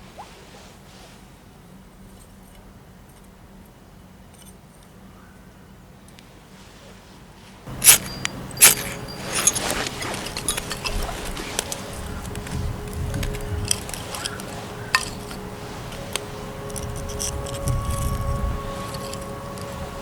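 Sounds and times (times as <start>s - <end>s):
small metal objects clattering: 7.7s - 20.0s.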